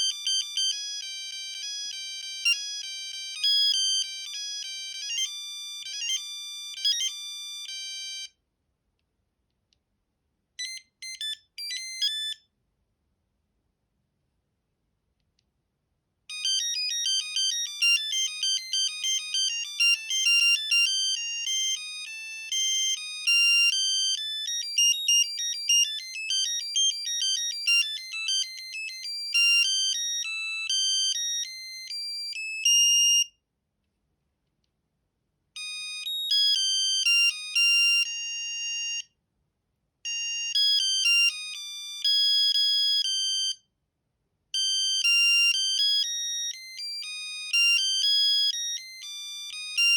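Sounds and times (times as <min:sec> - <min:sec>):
mobile phone ringtones: 0:00.0 - 0:08.4, 0:10.6 - 0:12.4, 0:16.3 - 0:33.3, 0:35.6 - 0:39.1, 0:40.1 - 0:43.6, 0:44.6 - 0:49.9.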